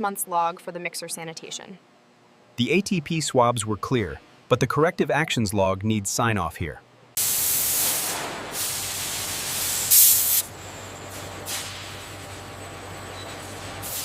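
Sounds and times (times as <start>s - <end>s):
steady hissing noise: 2.6s - 10.5s.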